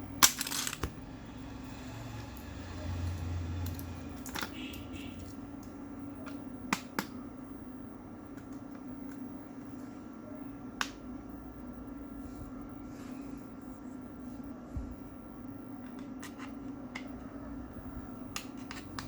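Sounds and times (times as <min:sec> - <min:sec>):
steady low hum: 0:00.0 - 0:19.0
plastic parts clicking: 0:00.2 - 0:00.9.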